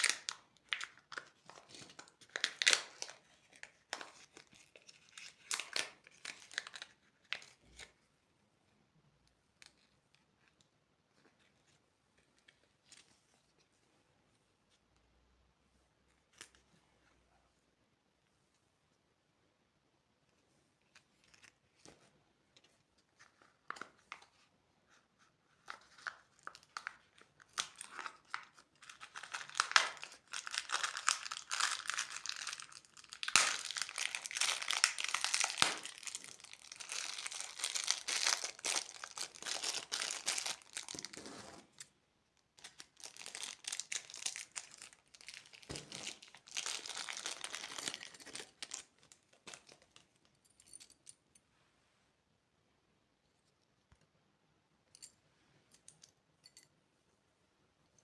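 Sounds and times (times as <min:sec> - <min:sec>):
plastic candy wrapper crinkling: 0:00.0 - 0:08.0, 0:25.6 - 0:41.8, 0:42.6 - 0:50.2.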